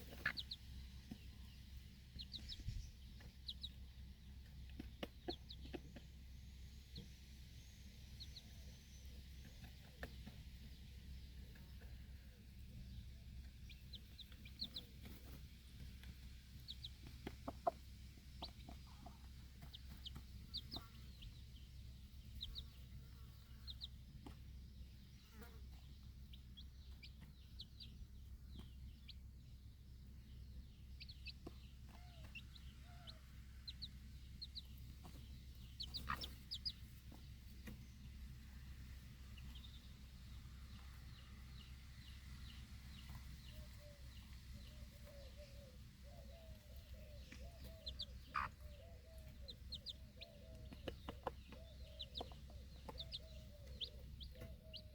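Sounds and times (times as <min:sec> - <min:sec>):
hen clucking: 0:00.0 - 0:06.2, 0:11.4 - 0:29.2, 0:30.6 - 0:37.8, 0:42.9 - 0:54.9
chicks peeping: 0:00.0 - 0:54.9.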